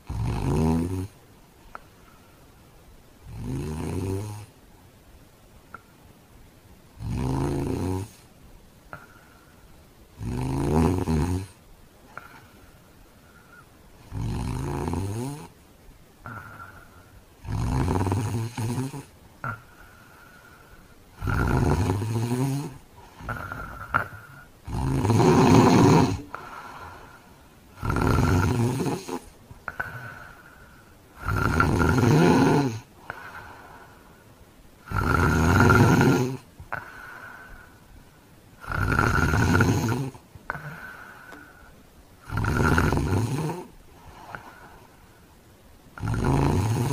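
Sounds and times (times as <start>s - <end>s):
man snoring heavily: 0.0s - 1.2s, 3.3s - 4.5s, 7.0s - 8.2s, 10.2s - 11.6s, 14.0s - 15.5s, 17.4s - 19.6s, 21.2s - 27.0s, 27.8s - 30.3s, 31.2s - 33.6s, 34.8s - 37.7s, 38.6s - 41.4s, 42.2s - 44.6s, 46.0s - 46.9s.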